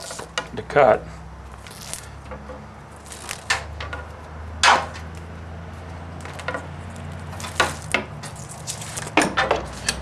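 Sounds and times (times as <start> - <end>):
wire insulation clacks and scrapes: 0.0 - 0.5, 1.6 - 5.2, 6.2 - 10.0.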